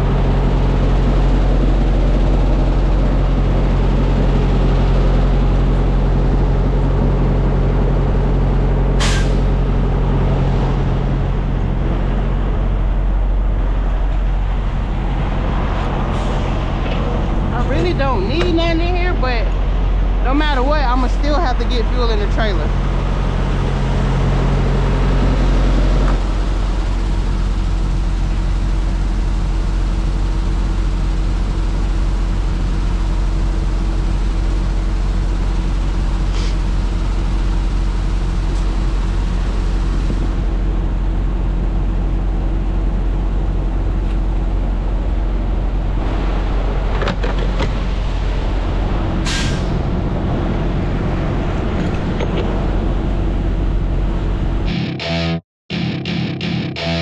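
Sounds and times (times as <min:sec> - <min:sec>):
diesel truck engine running: 0:00.0 - 0:55.2
short sharp air hiss: 0:09.0 - 0:09.4.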